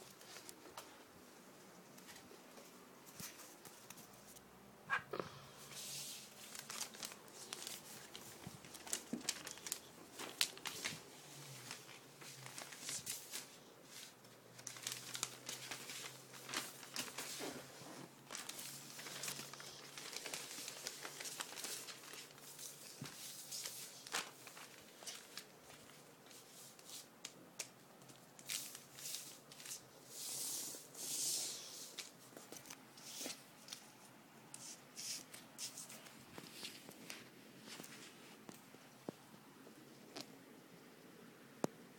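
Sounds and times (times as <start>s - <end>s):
packaging crinkling and tearing: 6.4s - 13.5s, 14.1s - 26.0s.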